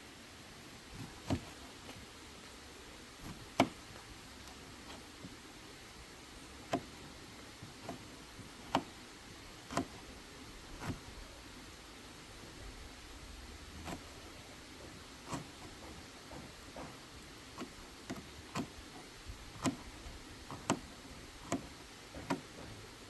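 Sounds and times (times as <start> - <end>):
faint background hiss: 0.0 - 23.0
cooking knocks and clicks: 14.8 - 23.0.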